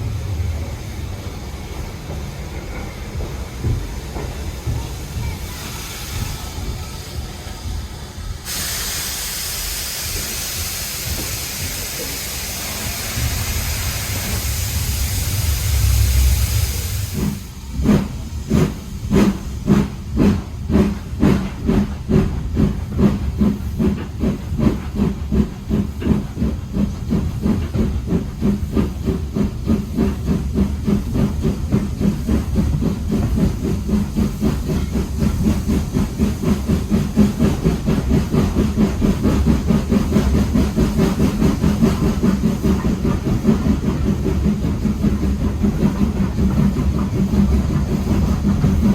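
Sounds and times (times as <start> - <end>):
loud steam hiss: 0.0 - 22.0
steam locomotive exhaust chuffs: 0.0 - 48.9.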